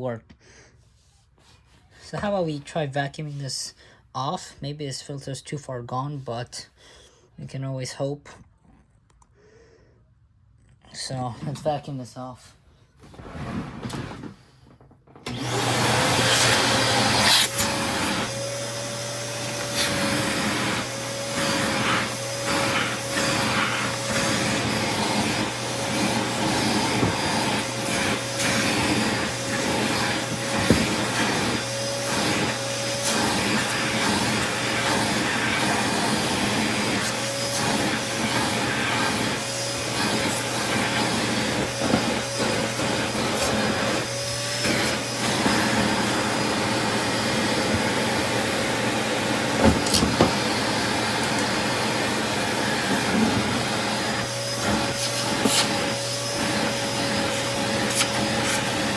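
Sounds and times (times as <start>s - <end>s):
vacuum cleaner running: 13.1s - 58.9s
vacuum nozzle clicks and knocks: 23.2s - 36.0s, 49.6s - 50.5s, 57.8s - 58.8s.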